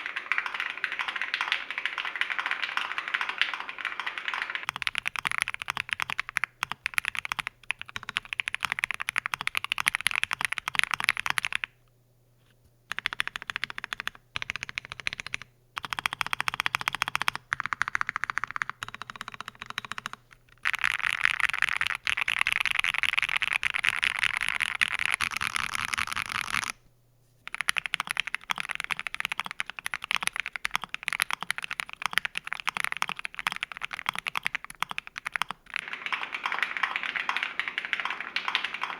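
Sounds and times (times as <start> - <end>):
mechanical keyboard typing: 0.0 - 11.8, 12.9 - 26.8, 27.5 - 38.9.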